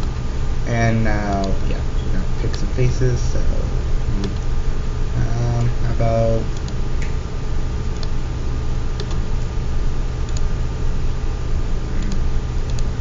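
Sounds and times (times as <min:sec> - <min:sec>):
low background hum: 0:00.0 - 0:13.0
computer mouse clicks: 0:01.3 - 0:01.6, 0:09.0 - 0:09.2, 0:10.3 - 0:10.5, 0:12.0 - 0:12.9.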